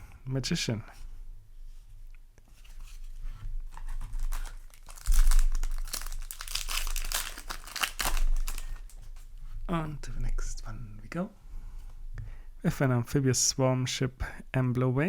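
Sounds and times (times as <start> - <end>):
foil wrapper crinkling and tearing: 3.7 - 9.3.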